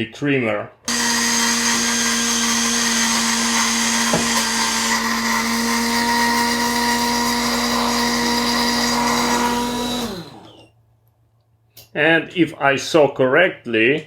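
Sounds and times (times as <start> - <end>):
coffee machine motor whine: 0.9 - 10.7.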